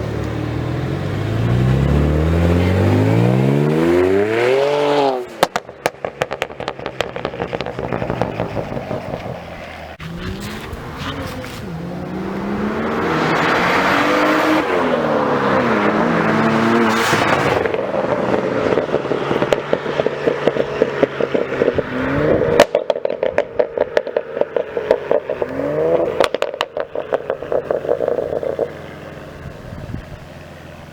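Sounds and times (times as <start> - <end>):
car engine revving: 0.0 - 30.9
exhaust crackles and pops: 5.3 - 11.7, 15.9 - 30.9.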